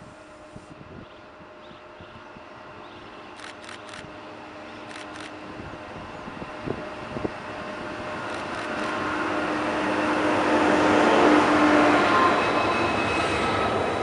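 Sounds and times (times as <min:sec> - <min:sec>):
train humming: 0:00.0 - 0:14.0.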